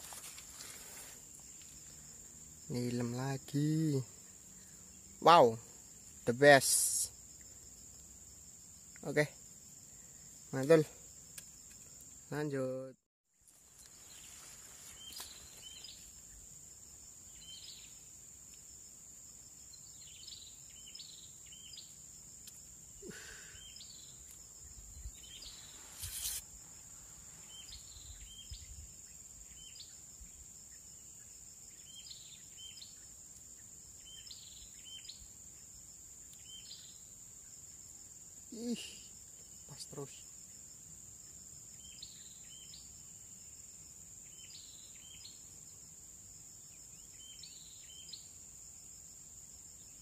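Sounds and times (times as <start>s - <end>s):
high-pitched insect drone: 23.0s - 33.0s, 38.4s - 40.3s
brief hiss: 25.3s - 27.6s.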